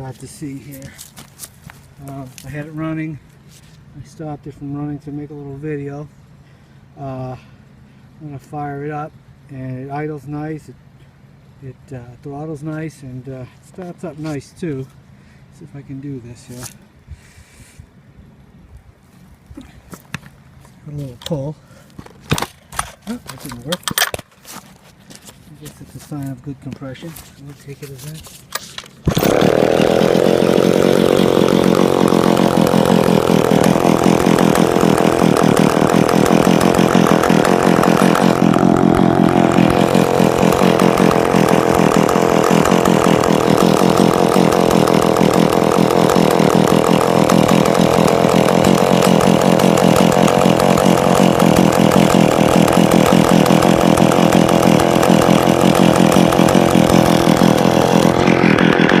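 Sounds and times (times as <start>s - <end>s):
chainsaw starting and running: 0.0s - 3.0s, 28.6s - 59.0s.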